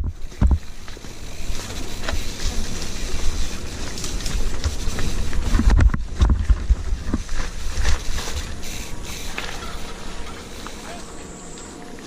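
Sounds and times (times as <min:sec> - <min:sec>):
wind buffeting microphone: 0:01.5 - 0:08.7.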